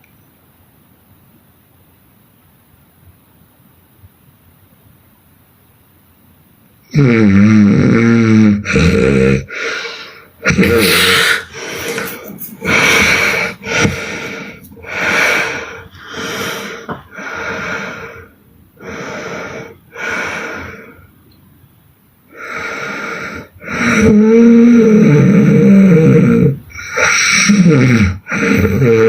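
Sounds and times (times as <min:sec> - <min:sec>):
woman snoring: 0:06.9 - 0:20.9, 0:22.4 - 0:29.0.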